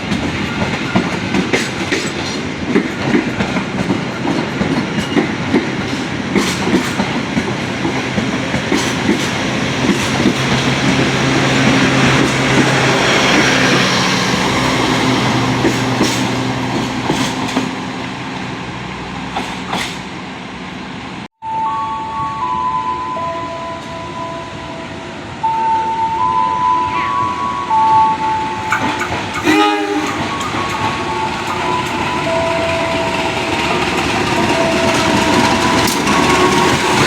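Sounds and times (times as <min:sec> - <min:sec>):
train wheels clicking over rails: 0:00.0 - 0:18.5, 0:19.2 - 0:20.3, 0:28.6 - 0:37.0
train drive humming: 0:00.0 - 0:21.3, 0:22.1 - 0:37.0.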